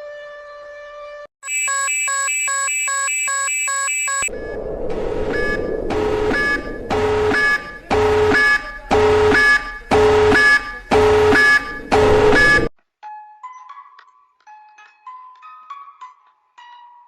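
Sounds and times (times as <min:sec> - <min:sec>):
emergency alarm beeping: 0:01.4 - 0:12.7.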